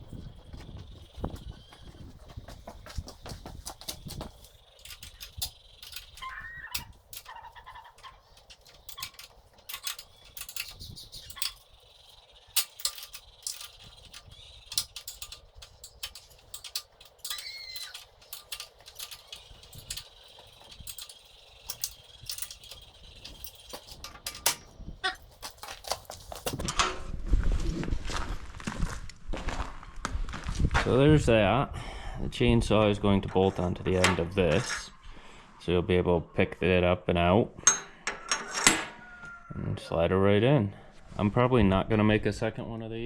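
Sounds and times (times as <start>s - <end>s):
metal parts clinking and rattling: 3.7s - 26.9s, 37.6s - 39.0s.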